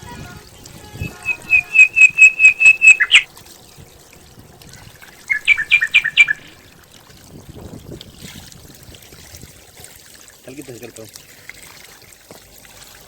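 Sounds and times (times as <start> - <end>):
bird calling: 1.1 - 3.3, 5.3 - 6.6.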